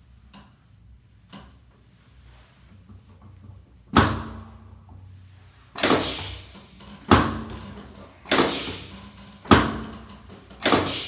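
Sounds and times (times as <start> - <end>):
drop table snapping down: 5.8 - 11.0.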